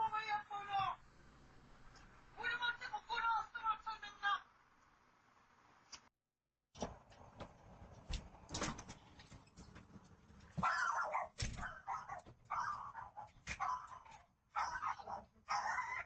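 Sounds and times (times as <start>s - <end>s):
dog barking: 10.6s - 16.0s.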